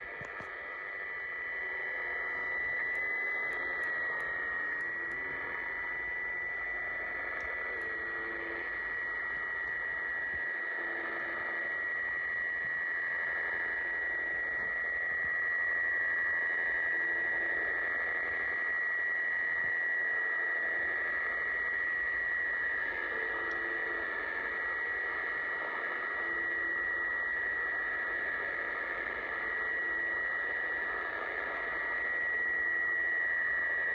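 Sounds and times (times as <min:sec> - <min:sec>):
radio static hiss: 0:00.0 - 0:15.2
steady high whistle: 0:00.0 - 0:33.9.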